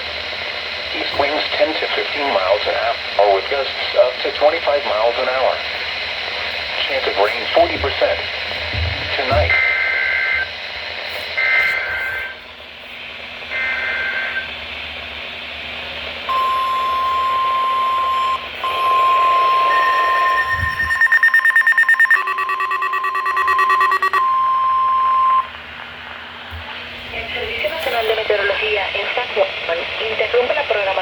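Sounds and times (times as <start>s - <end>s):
steady weather alert tone: 1.0s - 10.5s, 16.3s - 25.7s
electronic alert beeps: 16.3s - 25.5s
fast pulsing tone: 20.3s - 24.6s
warbling digital header bursts: 20.5s - 24.2s.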